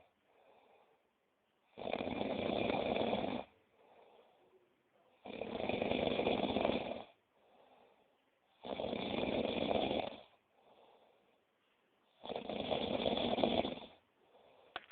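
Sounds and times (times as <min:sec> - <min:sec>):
faint breath: 0:00.0 - 0:01.2, 0:03.5 - 0:05.2, 0:07.2 - 0:08.6, 0:10.3 - 0:12.2, 0:13.9 - 0:14.9
person snoring: 0:01.7 - 0:04.3, 0:05.2 - 0:08.0, 0:08.6 - 0:11.2, 0:12.2 - 0:14.8.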